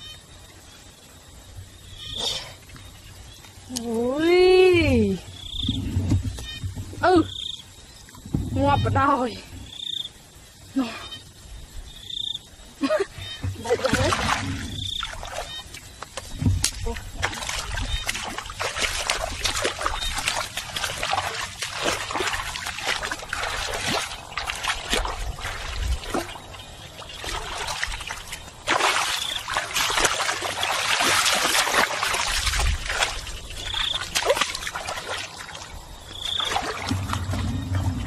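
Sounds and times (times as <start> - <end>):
water splashing and trickling: 12.6 - 38.0.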